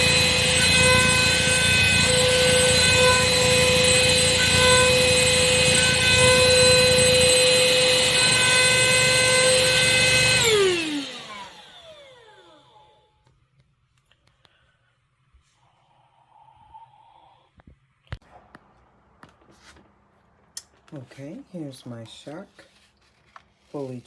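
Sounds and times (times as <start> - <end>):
handheld vacuum motor whining: 0.0 - 13.1.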